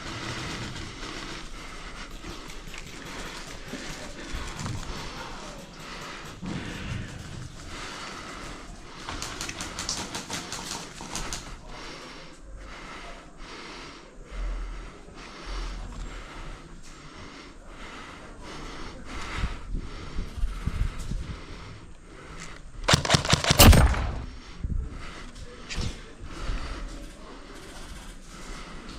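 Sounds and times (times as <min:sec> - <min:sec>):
small clicks and rustles: 0:00.0 - 0:11.6
person breathing hard: 0:00.0 - 0:27.3.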